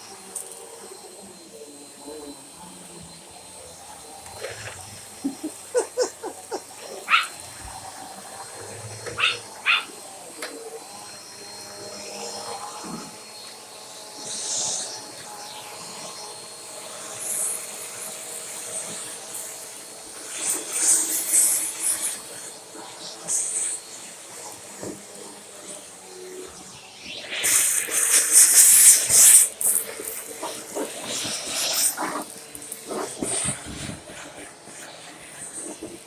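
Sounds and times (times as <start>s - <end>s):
vacuum sweeper running: 0.0s - 36.0s
dog barking: 5.4s - 7.4s, 9.0s - 10.0s.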